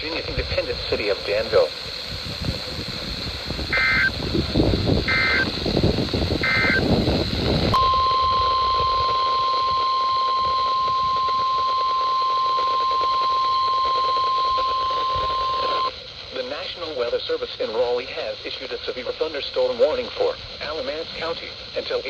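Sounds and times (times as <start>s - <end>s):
short digital data bursts: 0.0s - 16.3s
steady alarm tone: 3.3s - 16.0s.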